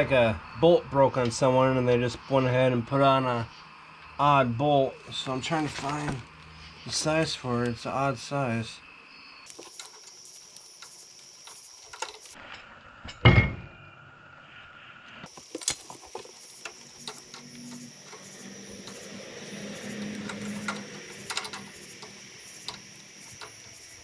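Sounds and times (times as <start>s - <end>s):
metal tools clinking: 9.5s - 12.4s, 15.3s - 24.0s.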